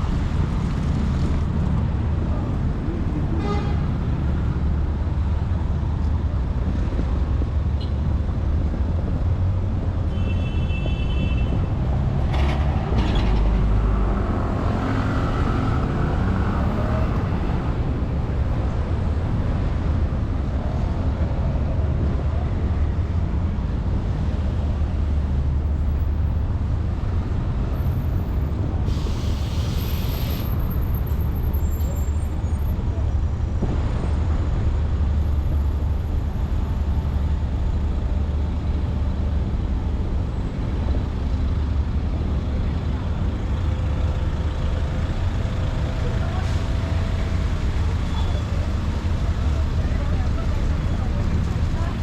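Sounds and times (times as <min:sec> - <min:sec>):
cars and buses passing: 0:00.0 - 0:52.0
air hiss: 0:28.9 - 0:30.6.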